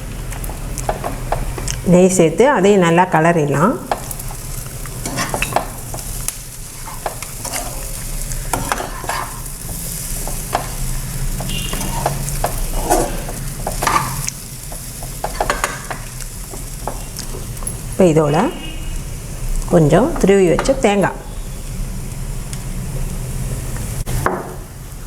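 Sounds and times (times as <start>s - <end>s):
food sizzling in a pan: 0.0s - 25.0s
spatula scraping a pan: 3.9s - 14.3s.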